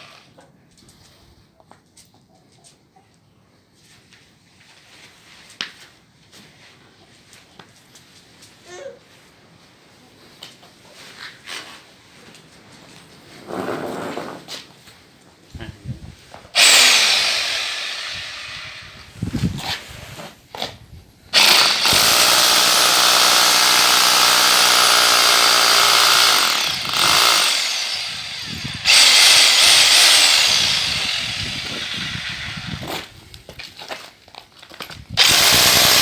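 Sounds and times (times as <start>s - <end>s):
hammer drill running: 16.6s - 19.0s, 21.4s - 32.9s, 35.2s - 36.0s.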